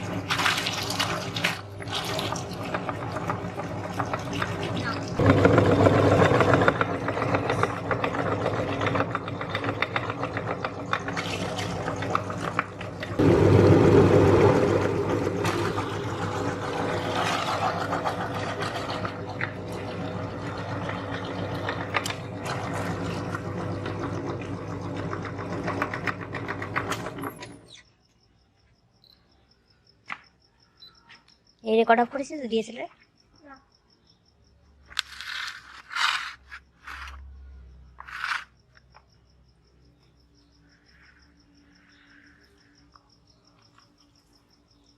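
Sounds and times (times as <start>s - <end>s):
meat grinder motor running: 0.0s - 27.2s.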